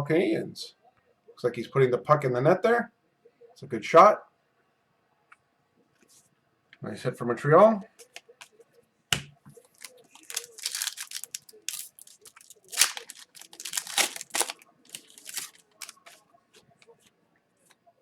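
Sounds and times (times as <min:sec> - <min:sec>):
wrapper tearing and crinkling: 0:09.8 - 0:16.2.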